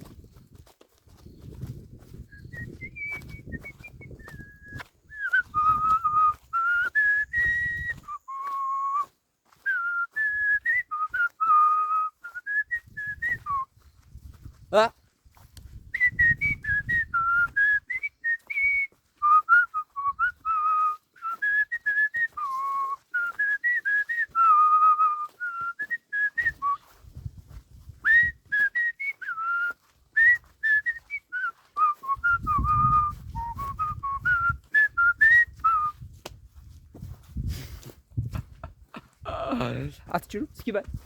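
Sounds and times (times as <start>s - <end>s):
person whistling a tune: 1.6s - 14.1s, 15.8s - 36.1s.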